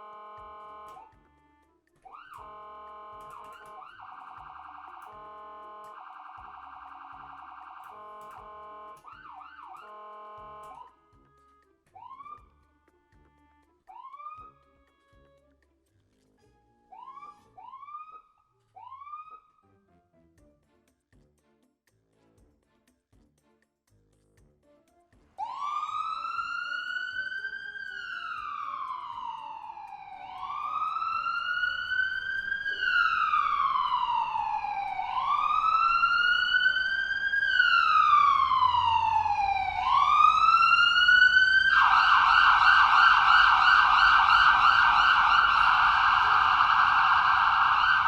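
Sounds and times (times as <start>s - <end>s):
emergency vehicle siren: 0.0s - 1.2s, 2.0s - 11.0s, 12.0s - 12.5s, 13.9s - 14.7s, 16.9s - 19.7s, 25.4s - 48.0s.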